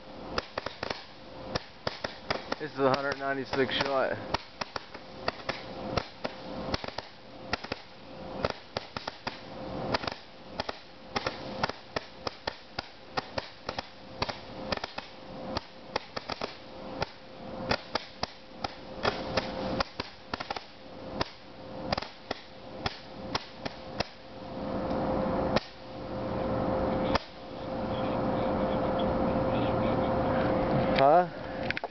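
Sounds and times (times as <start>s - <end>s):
firework cake shots and bangs: 0.4s - 24.2s.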